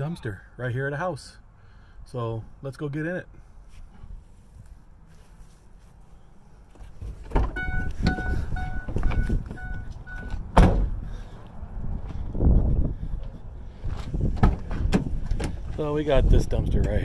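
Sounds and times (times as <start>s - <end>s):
door-open warning chime beeping: 7.5s - 10.4s
van door slamming shut: 10.5s - 11.0s.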